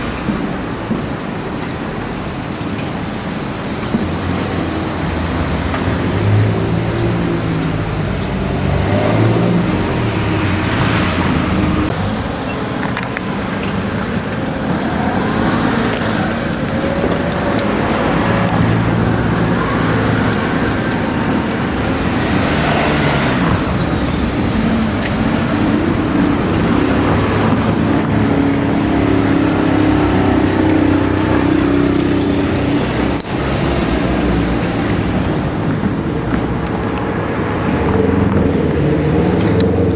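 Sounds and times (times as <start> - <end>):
passing vehicles: 0.0 - 39.9.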